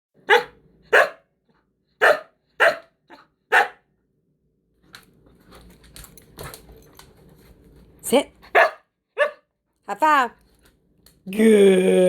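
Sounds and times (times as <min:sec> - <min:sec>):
dog barking: 0:00.2 - 0:01.3, 0:02.0 - 0:03.9, 0:08.5 - 0:09.5.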